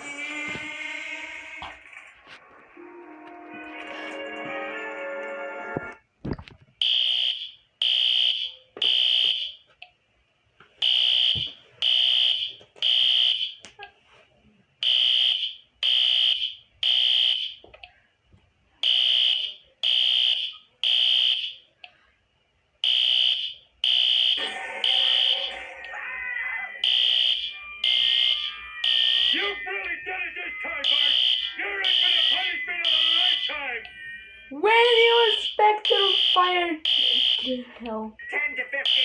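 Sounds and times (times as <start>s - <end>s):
fire alarm beeps: 6.8s - 9.6s, 10.8s - 13.6s, 14.8s - 17.6s, 18.8s - 21.6s, 22.8s - 26.0s, 26.8s - 39.0s.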